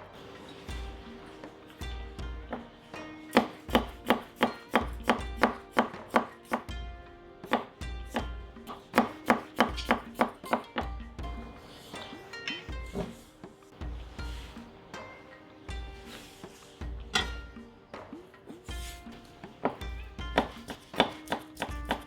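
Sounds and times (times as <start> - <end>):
background music with soft beat: 0.0 - 22.0
knife chopping on cutting board: 3.3 - 6.7, 9.0 - 10.6, 20.4 - 22.0.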